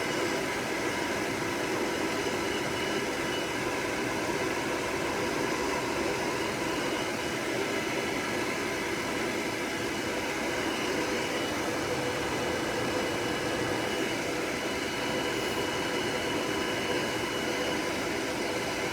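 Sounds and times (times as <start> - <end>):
hair dryer blowing: 3.8 - 18.9.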